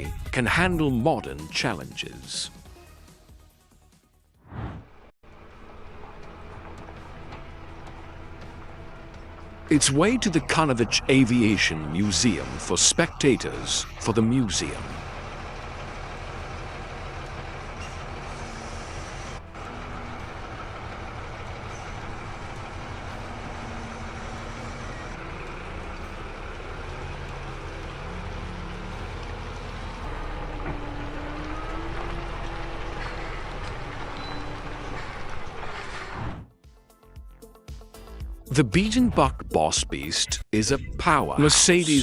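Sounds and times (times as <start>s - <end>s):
road noise: 4.5s - 36.5s
heavy truck engine drone: 4.9s - 36.5s.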